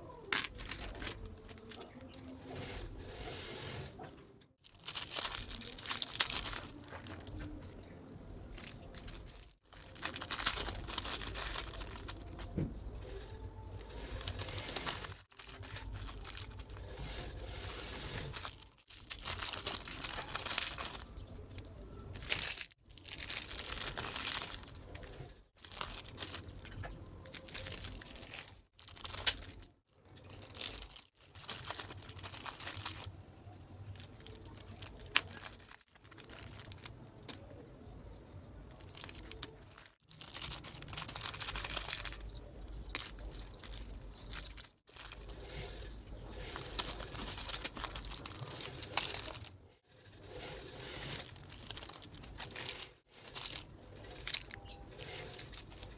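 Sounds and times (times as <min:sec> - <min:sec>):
packaging crinkling and tearing: 0:04.6 - 0:49.6, 0:50.2 - 0:55.9.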